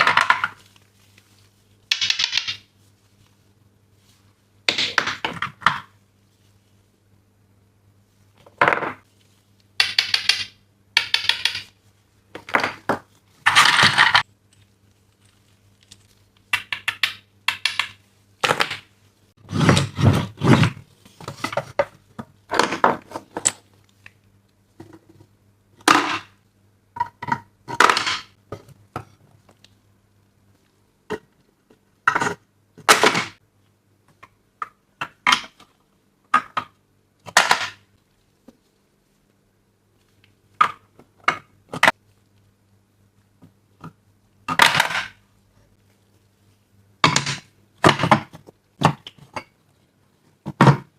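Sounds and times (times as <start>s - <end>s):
plastic toy pieces clicking: 16.6s - 18.0s.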